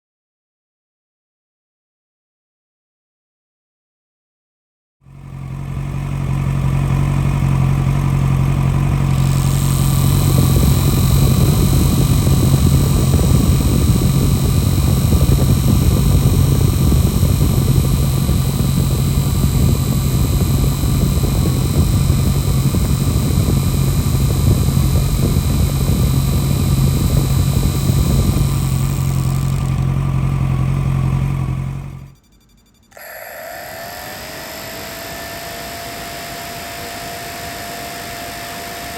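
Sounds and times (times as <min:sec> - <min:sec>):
motorcycle engine running: 0:05.1 - 0:32.2
radiator fan whirring: 0:08.4 - 0:32.2, 0:33.0 - 0:38.9.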